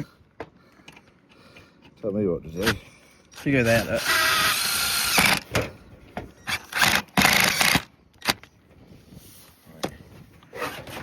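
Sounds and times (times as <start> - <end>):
power drill driving screws into metal: 3.6 - 5.6, 6.4 - 8.5.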